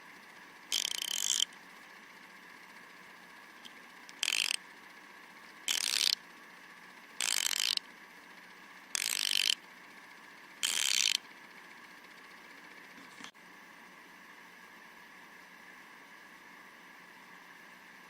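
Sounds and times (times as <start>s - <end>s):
ratchet clicking: 0.7s - 1.6s, 4.1s - 4.6s, 5.7s - 6.2s, 7.2s - 7.8s, 8.9s - 9.6s, 10.6s - 11.2s.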